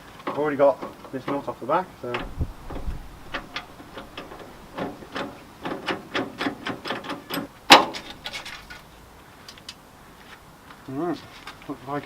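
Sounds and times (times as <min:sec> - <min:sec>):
tools and parts clicking: 0:02.1 - 0:09.8.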